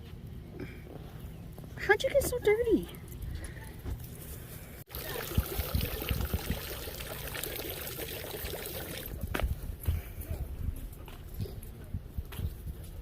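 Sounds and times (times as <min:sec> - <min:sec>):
running water: 0:04.9 - 0:09.2.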